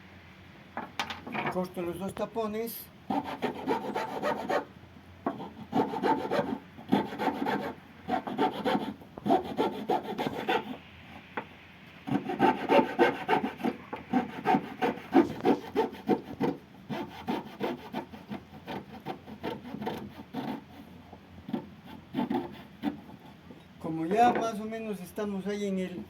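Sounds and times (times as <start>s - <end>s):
hand saw cutting wood: 3.1s - 4.7s, 5.3s - 10.8s, 12.0s - 23.4s.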